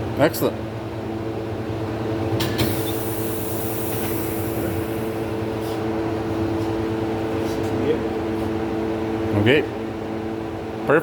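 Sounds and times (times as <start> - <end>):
tyre changer mechanical hum: 0.0 - 11.0
sharp mechanical clunk: 2.4 - 3.0
air hissing: 2.6 - 5.8.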